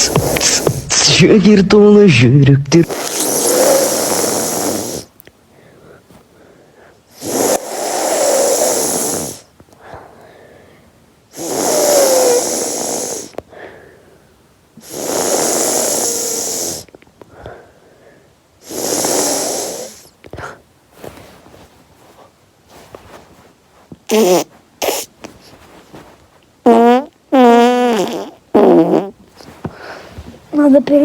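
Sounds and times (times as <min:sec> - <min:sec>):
person snoring: 0:00.0 - 0:01.0, 0:02.8 - 0:05.1, 0:07.2 - 0:09.4, 0:11.4 - 0:13.3, 0:14.8 - 0:16.9, 0:18.6 - 0:20.1.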